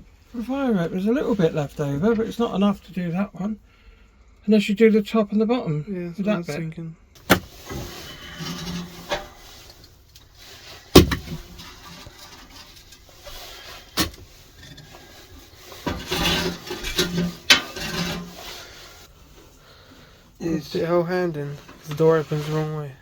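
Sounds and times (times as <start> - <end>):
scraping and rubbing: 7.2 - 19.6, 20.6 - 23.0.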